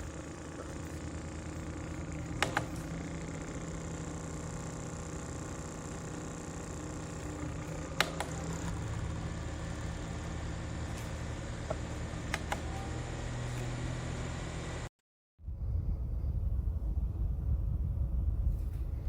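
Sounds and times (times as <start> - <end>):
desk fan motor whirring: 0.0 - 14.9
sharp clicks: 0.8 - 9.8, 11.8 - 12.8.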